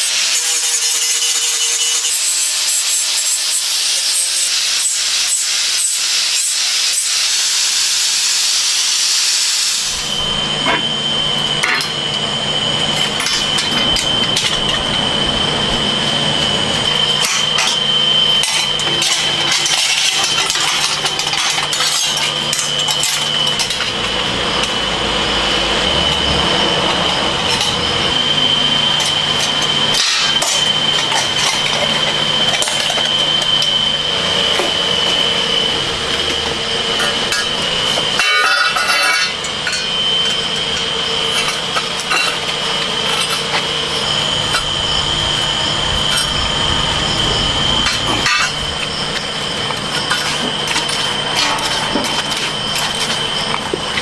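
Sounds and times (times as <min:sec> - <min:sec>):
machinery whine and hum: 0:00.0 - 0:54.0
metal clinks and knocks: 0:47.8 - 0:54.0.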